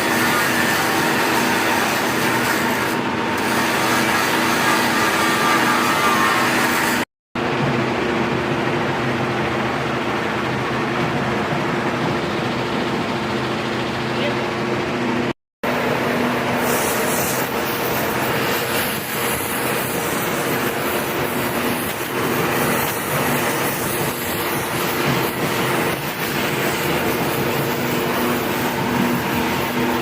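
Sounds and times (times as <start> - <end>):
angle grinder grinding metal: 0.0 - 7.0.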